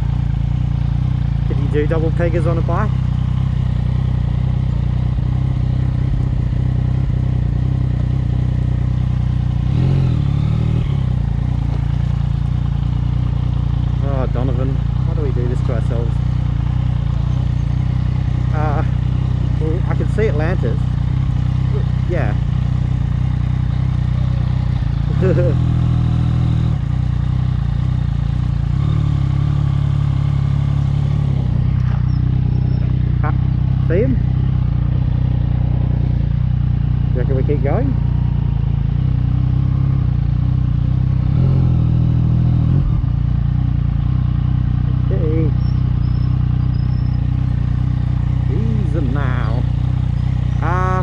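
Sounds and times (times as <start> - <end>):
motorcycle engine at low revs: 0.0 - 51.0.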